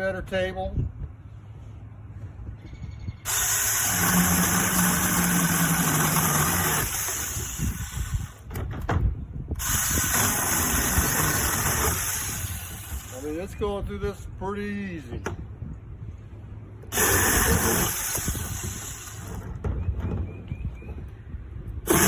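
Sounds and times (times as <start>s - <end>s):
mini chainsaw cutting wood: 3.3s - 8.4s, 9.6s - 13.2s, 16.9s - 19.4s.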